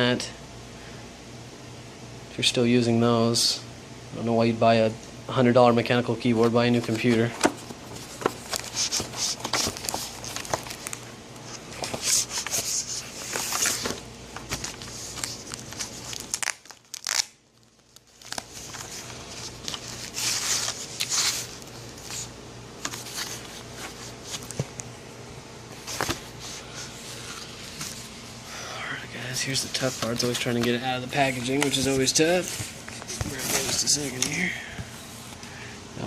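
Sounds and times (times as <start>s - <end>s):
packaging crinkling and rustling: 6.4s - 24.9s, 29.2s - 34.5s.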